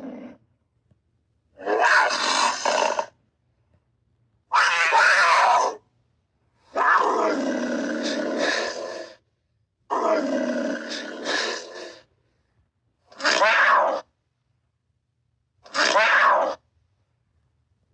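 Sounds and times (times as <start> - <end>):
panther calling: 1.6 - 3.1, 4.5 - 5.8, 6.7 - 9.2, 9.9 - 12.1, 13.1 - 14.1, 15.7 - 16.6.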